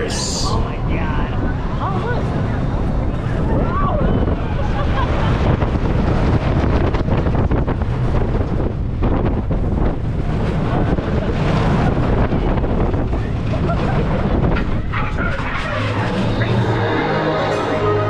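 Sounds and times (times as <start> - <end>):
low rumble: 0.0 - 18.0
wind buffeting microphone: 0.0 - 18.0.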